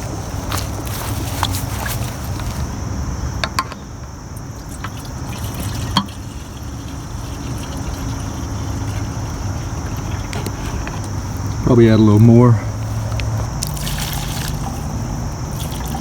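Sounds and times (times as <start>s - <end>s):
gasoline pouring into tank: 4.3s - 12.2s, 13.5s - 16.0s.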